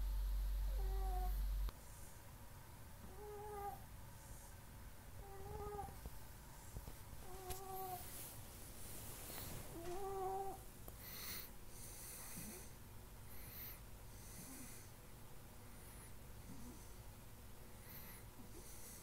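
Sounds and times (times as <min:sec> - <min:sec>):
pet snoring: 0:00.2 - 0:01.7, 0:03.0 - 0:03.8, 0:05.2 - 0:06.0, 0:09.4 - 0:14.9, 0:15.8 - 0:17.0, 0:17.8 - 0:19.0
raspy breaths: 0:11.0 - 0:15.0.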